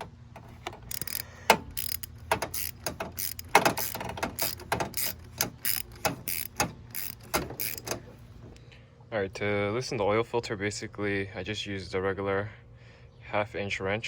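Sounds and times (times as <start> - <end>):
ratchet wrench clicking: 0.0 - 8.6.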